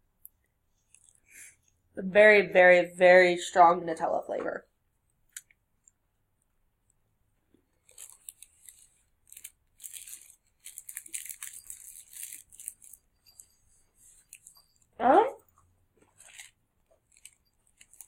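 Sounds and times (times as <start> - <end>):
wafer being chewed crunching: 15.5 - 18.0.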